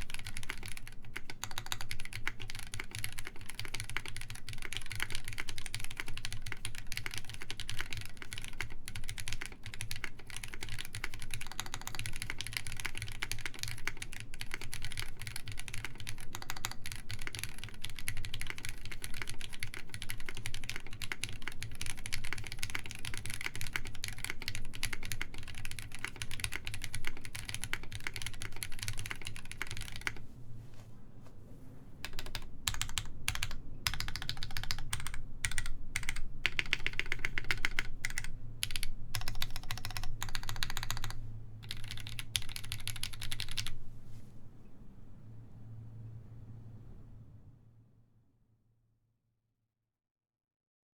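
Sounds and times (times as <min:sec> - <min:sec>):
mechanical keyboard typing: 0:00.0 - 0:30.2, 0:32.0 - 0:43.8.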